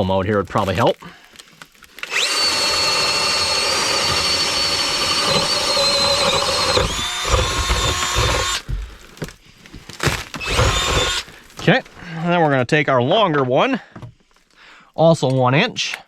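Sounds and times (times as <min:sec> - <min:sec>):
power drill boring: 0:02.0 - 0:09.2, 0:10.1 - 0:11.7.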